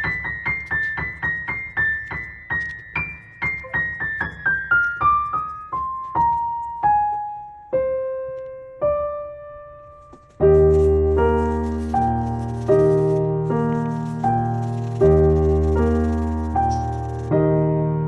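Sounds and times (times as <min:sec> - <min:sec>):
piano music: 0:00.0 - 0:18.0.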